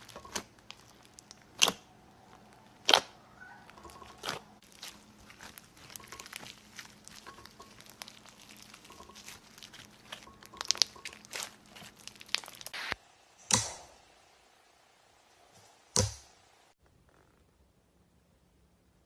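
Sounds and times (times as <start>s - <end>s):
loud sharp pop: 13.5s - 13.9s.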